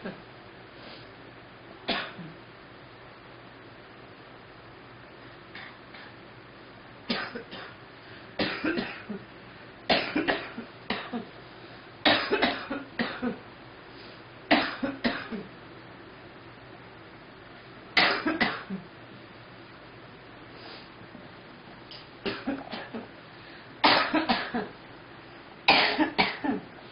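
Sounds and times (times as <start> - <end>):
girl coughing: 1.9 - 2.3, 8.4 - 9.2, 9.9 - 11.3, 12.1 - 13.4, 14.5 - 15.5, 18.0 - 18.8, 22.3 - 23.1, 23.8 - 24.7, 25.7 - 26.7.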